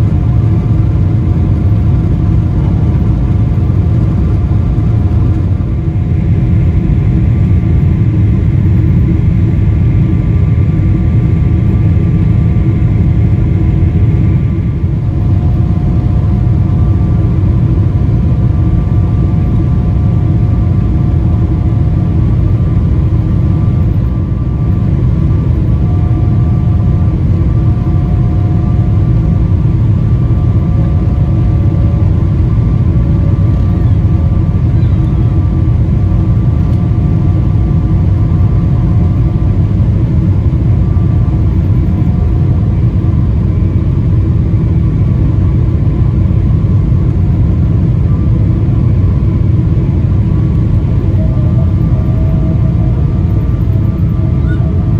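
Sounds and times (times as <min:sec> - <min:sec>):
airplane cabin rumble: 0:00.0 - 0:54.9
faint hum tones: 0:00.0 - 0:54.9.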